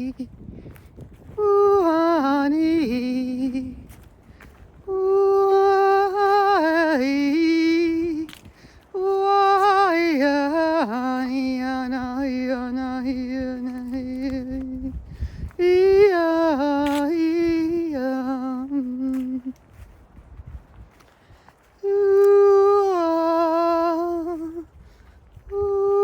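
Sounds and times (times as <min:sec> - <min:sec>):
woman singing wordless notes: 0:04.8 - 0:15.0, 0:21.8 - 0:24.6.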